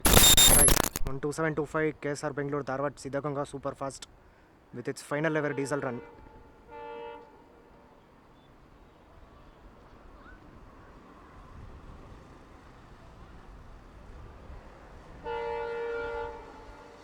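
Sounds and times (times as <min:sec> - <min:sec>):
shrill air horn blast: 0:15.2 - 0:17.0.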